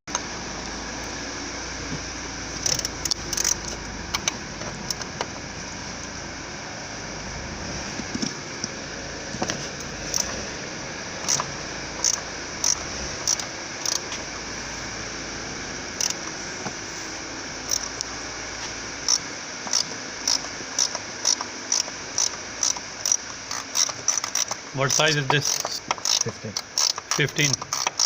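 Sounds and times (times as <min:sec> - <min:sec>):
ratchet wrench clicking: 0:02.6 - 0:05.2, 0:10.1 - 0:10.4, 0:11.2 - 0:14.1, 0:16.0 - 0:16.3, 0:17.7 - 0:18.1, 0:19.0 - 0:28.0.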